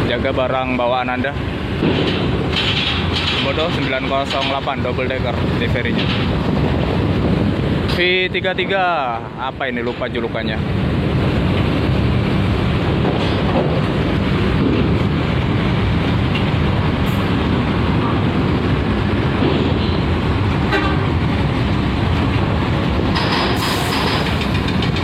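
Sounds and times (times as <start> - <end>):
diesel bus engines rumbling: 0.0 - 25.0.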